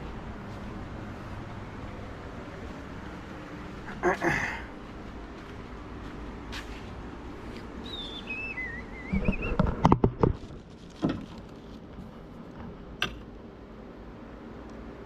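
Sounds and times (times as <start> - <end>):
wavering whistle: 7.8 - 9.6
knocks and clatters: 9.2 - 11.5.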